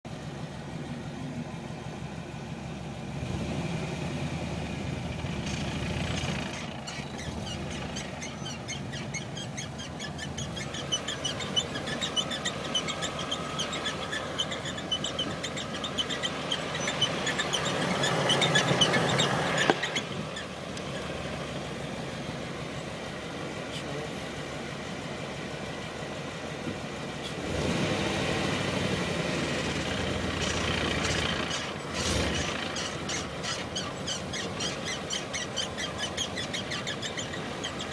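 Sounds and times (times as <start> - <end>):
car engine idling: 0.0 - 37.9
high-pitched squeak: 6.3 - 20.5.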